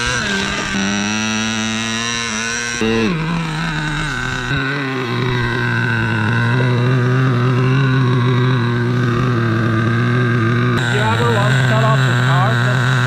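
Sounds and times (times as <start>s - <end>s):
small two-stroke engine idling: 0.0s - 13.0s.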